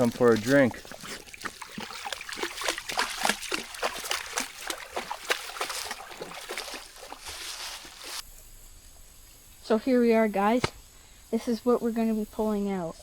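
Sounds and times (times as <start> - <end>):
splashing in shallow water and mud: 0.0 - 8.2.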